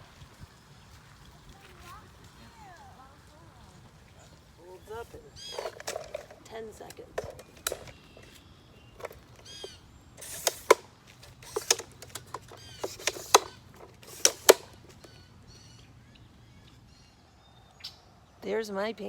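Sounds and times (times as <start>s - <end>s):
small bird chirping: 3.6s - 18.6s.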